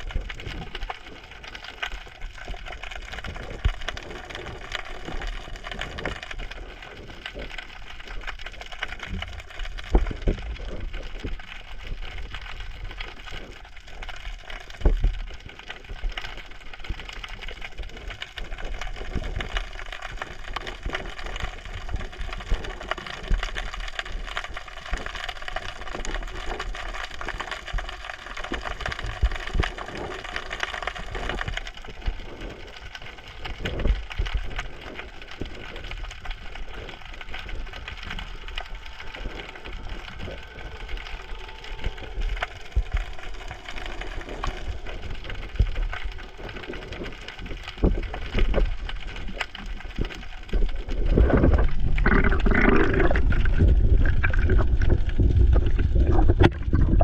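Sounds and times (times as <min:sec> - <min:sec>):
underwater crackle of small clicks: 0:00.0 - 0:57.0.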